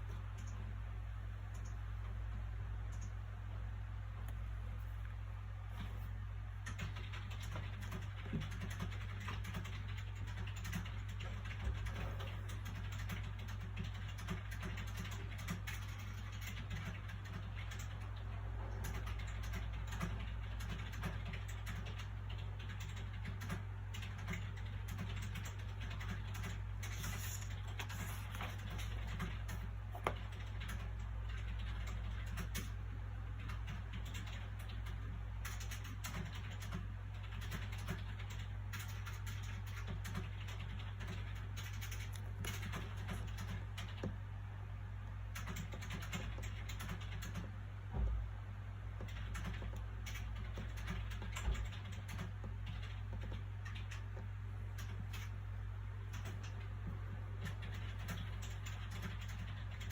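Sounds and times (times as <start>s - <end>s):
low background hum: 0.0s - 59.9s
small clicks and taps: 18.8s - 32.8s, 33.4s - 44.2s
book pages rustling: 26.8s - 29.0s.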